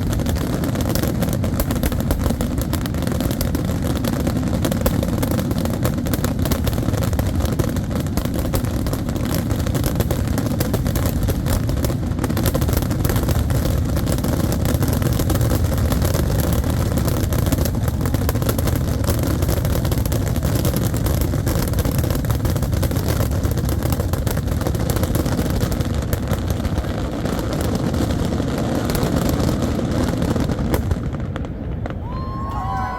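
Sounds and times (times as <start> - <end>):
fireworks bursts and crackle: 0.0 - 32.9.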